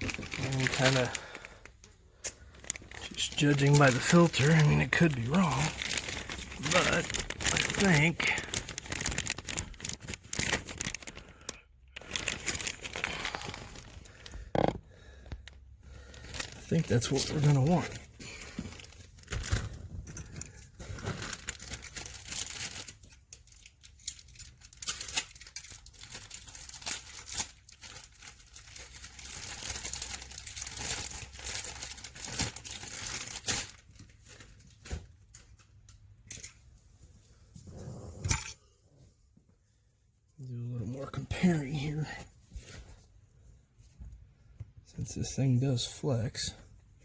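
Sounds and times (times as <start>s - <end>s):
plastic parts rustling and scraping: 0.0s - 36.8s.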